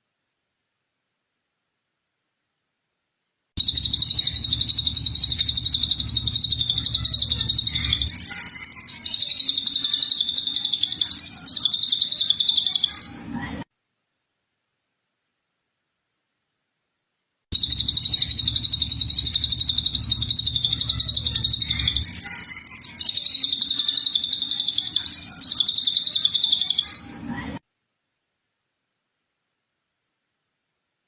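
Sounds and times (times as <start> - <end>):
songbird high-pitched trill: 3.6 - 13.0, 17.5 - 27.0.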